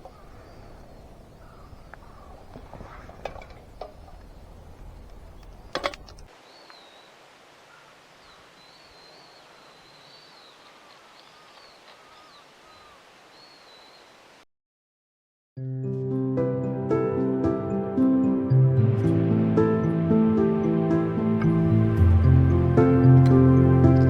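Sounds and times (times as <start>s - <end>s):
wild birds calling: 0.0s - 14.2s.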